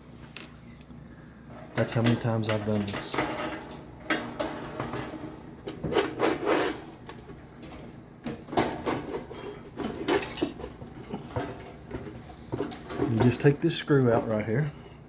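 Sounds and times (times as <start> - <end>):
metal parts knocking and clinking: 9.8 - 10.7.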